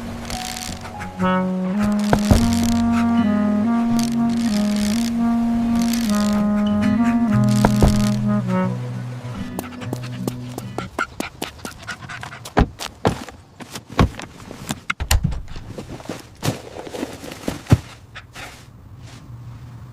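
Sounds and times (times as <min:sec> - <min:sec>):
background music: 0:00.0 - 0:10.9
dog panting: 0:06.4 - 0:07.2, 0:09.5 - 0:12.6.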